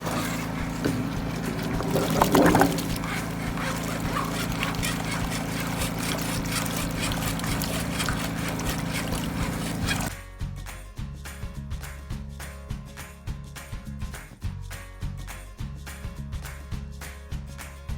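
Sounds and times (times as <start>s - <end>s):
low machine hum: 0.0s - 10.1s
water gurgling in drain pipe: 0.0s - 10.1s
water splashing: 0.0s - 10.1s.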